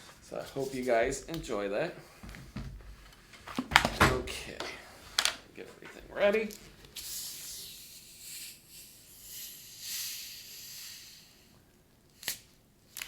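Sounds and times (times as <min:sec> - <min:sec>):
soft hissing rustle: 0:04.8 - 0:11.6.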